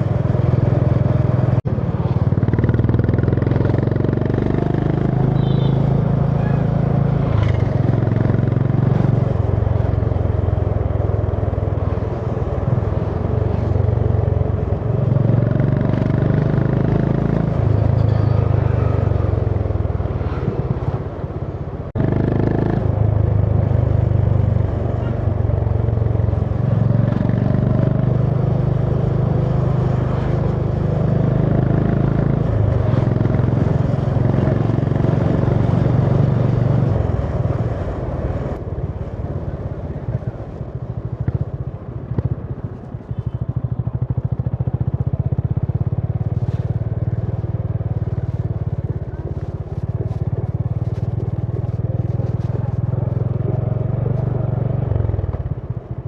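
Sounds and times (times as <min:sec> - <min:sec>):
motorcycle engine running: 0:00.0 - 0:56.0.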